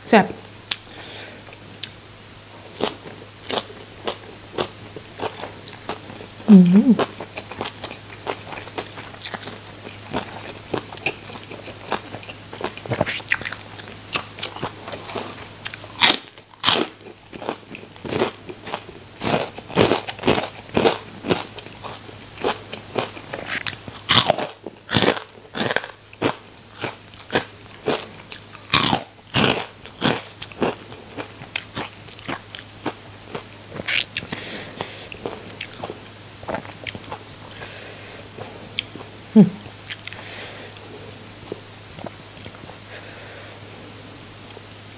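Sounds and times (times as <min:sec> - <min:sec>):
crunching fried food: 0:02.7 - 0:06.4, 0:07.0 - 0:39.1
quiet chewing: 0:25.0 - 0:43.0.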